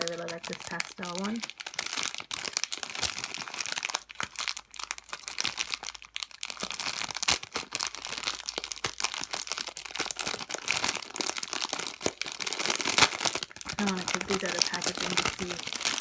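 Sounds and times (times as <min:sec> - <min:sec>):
plastic packaging crinkling: 0:00.0 - 0:16.0.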